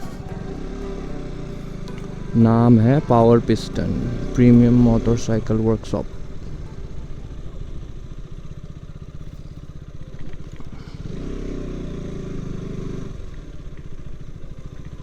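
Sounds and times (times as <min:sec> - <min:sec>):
motorcycle engine idling: 0:00.0 - 0:15.0.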